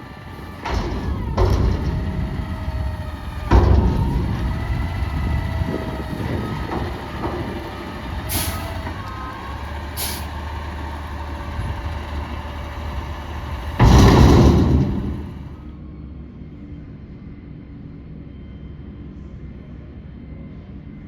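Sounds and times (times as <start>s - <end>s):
garbage truck engine running: 0.0s - 15.7s
air hiss bursts: 8.3s - 8.7s, 10.0s - 10.3s
loud knock: 13.7s - 15.6s.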